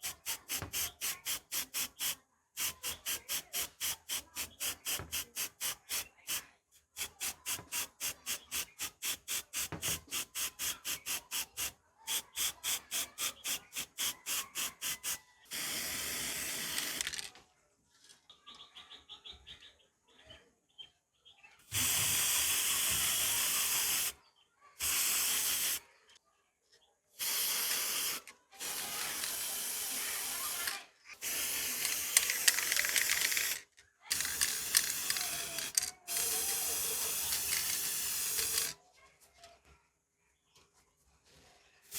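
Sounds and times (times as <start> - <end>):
aerosol spray can hissing: 0.0 - 6.4, 7.0 - 17.2, 21.8 - 24.2, 24.8 - 25.8, 27.2 - 38.8.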